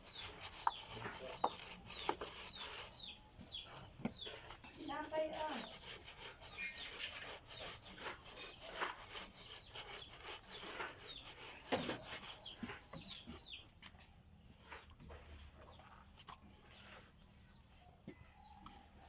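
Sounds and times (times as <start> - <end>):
sand scraping through a screen: 0.0 - 13.6.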